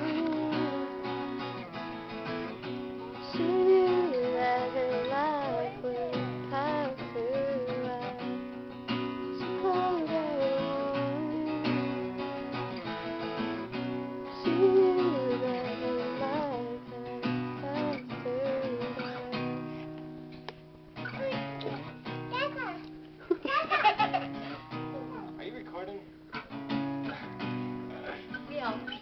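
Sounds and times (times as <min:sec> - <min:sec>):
person singing: 0:00.0 - 0:01.5, 0:03.2 - 0:08.4, 0:09.4 - 0:12.1, 0:14.3 - 0:19.9
acoustic guitar strumming: 0:00.0 - 0:29.0.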